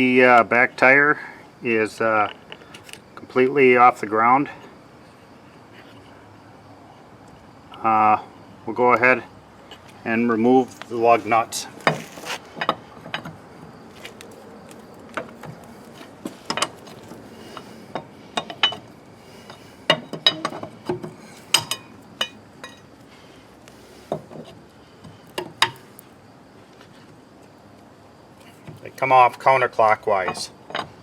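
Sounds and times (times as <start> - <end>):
lug wrench clinking on lug nuts: 16.4 - 22.9, 25.4 - 25.9, 30.0 - 31.0.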